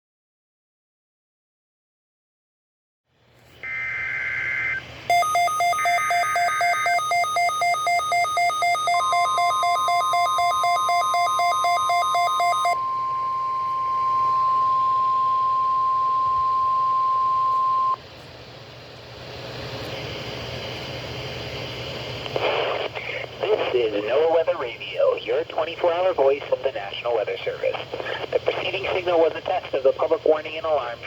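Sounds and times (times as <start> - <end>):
steady warning alarm tone: 3.7 - 18.0
warbling data tones: 4.2 - 18.0
rapid two-pitch beeping: 5.1 - 18.0.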